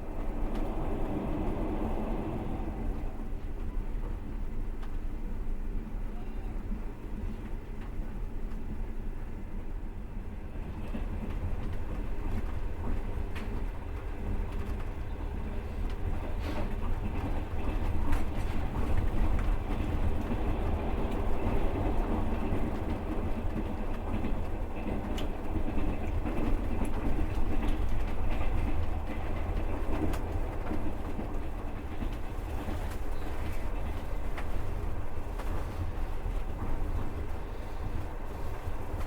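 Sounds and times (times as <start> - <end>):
train wheels rumbling on rails: 0.0 - 39.0.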